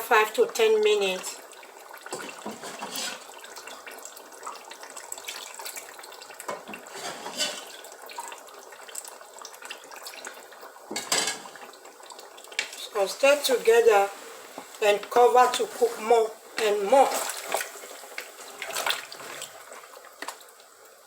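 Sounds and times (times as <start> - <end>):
water pouring into a pot: 0.5 - 21.0.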